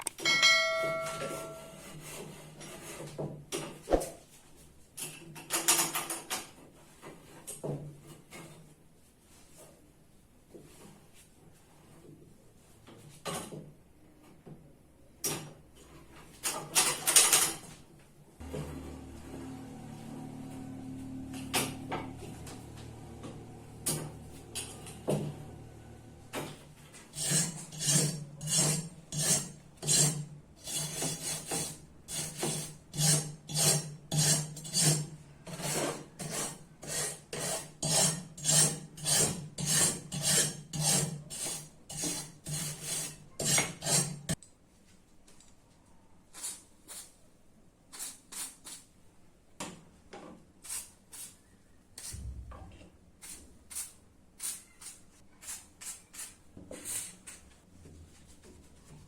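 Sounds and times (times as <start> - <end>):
hand scraping rusty metal: 26.9 - 44.4.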